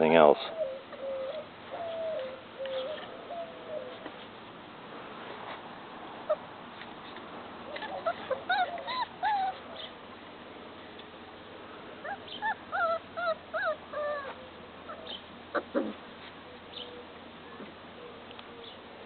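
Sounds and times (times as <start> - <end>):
puppies whining: 0.5 - 4.1, 6.2 - 6.5, 7.7 - 10.0, 12.0 - 17.2
puppy yelping: 6.2 - 6.4, 7.7 - 10.0, 12.0 - 16.0.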